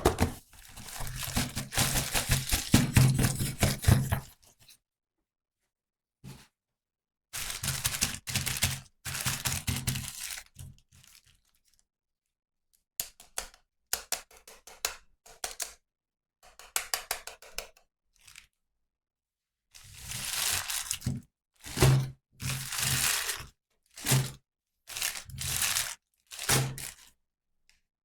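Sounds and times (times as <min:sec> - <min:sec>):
packaging rustling and tearing: 0:00.0 - 0:04.3.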